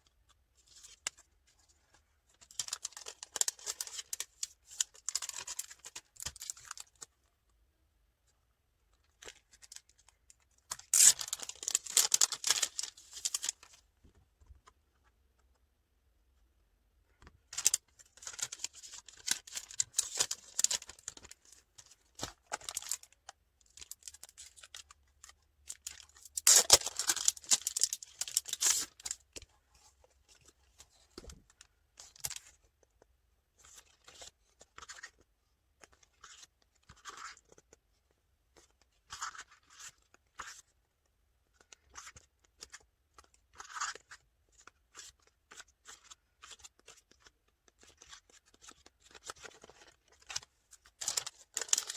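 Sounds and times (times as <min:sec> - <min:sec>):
packaging tearing and rustling: 0:10.8 - 0:13.7, 0:22.5 - 0:23.1, 0:25.8 - 0:29.2, 0:51.0 - 0:51.9.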